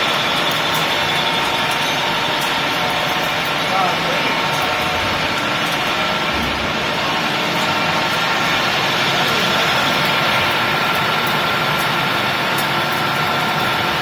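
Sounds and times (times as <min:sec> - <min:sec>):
lathe running: 0:00.0 - 0:14.0
thin steady whine: 0:00.0 - 0:14.0.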